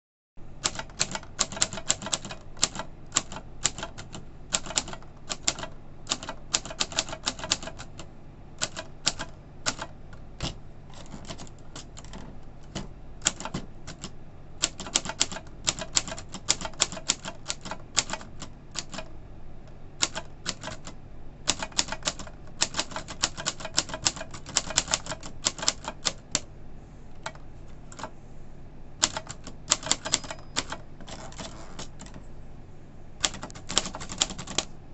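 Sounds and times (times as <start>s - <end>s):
manual typewriter key strikes: 0.6s - 8.0s, 8.6s - 19.1s, 20.0s - 20.9s, 21.5s - 26.4s, 29.0s - 32.2s, 33.2s - 34.7s.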